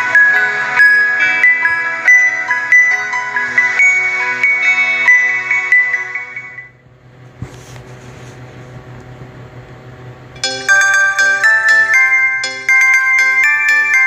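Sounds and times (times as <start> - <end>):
phone ringtone melody: 0.0 - 6.8, 10.4 - 14.0
low hum and hiss: 0.0 - 14.0.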